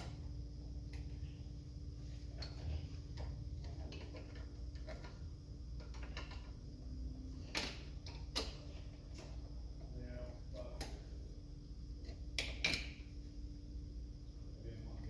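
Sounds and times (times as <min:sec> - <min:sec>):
tools clicking and tapping: 0:02.4 - 0:05.2, 0:05.8 - 0:06.6, 0:12.0 - 0:13.0.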